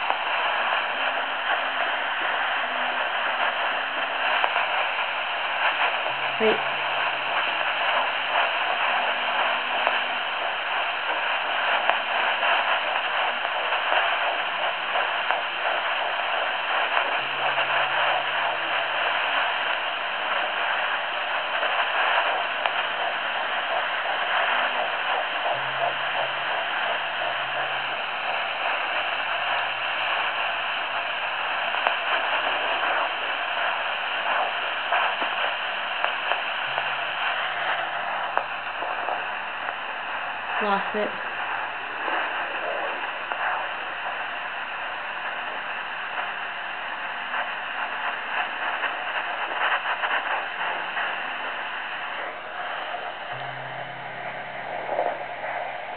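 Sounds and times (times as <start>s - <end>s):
doppler speaker hiss: 0.0s - 55.9s
fast fetal heartbeat pulsing: 0.0s - 55.9s.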